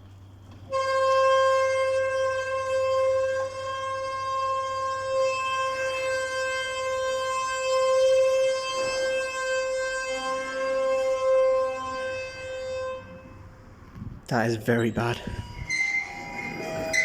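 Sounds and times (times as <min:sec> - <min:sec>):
lift high-pitched squeal: 0:03.1 - 0:13.8, 0:14.4 - 0:17.0.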